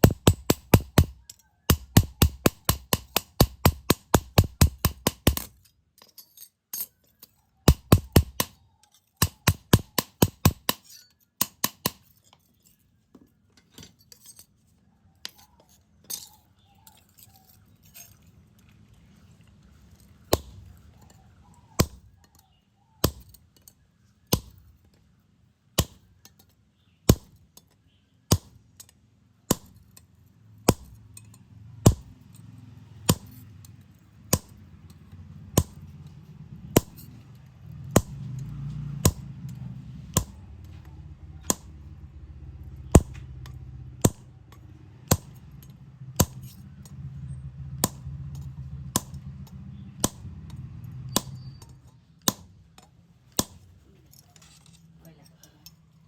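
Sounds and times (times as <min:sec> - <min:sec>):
hammer striking metal: 0:00.0 - 0:05.6, 0:07.7 - 0:08.6, 0:09.2 - 0:12.1, 0:30.7 - 0:32.2, 0:35.6 - 0:36.0, 0:36.7 - 0:37.2, 0:37.9 - 0:42.0, 0:42.7 - 0:52.5.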